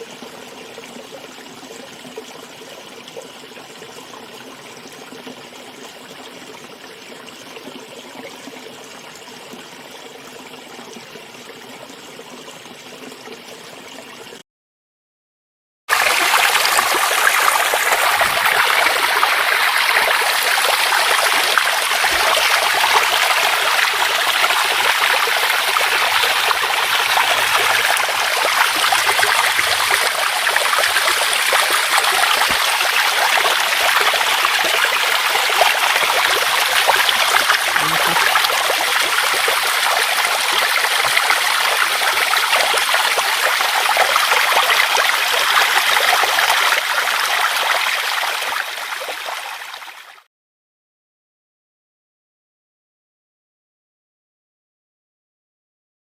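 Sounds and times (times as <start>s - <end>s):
loud rushing water: 15.9s - 49.4s
stream flowing: 15.9s - 50.2s.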